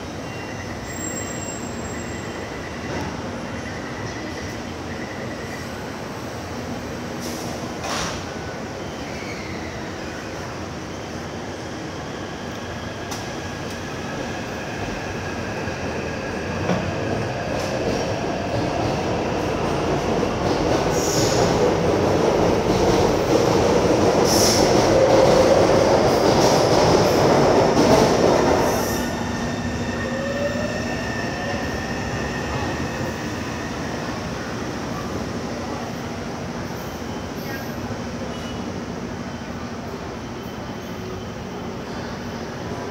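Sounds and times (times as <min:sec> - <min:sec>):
rail squeal: 0:00.0 - 0:06.4, 0:07.2 - 0:15.1, 0:36.5 - 0:42.9.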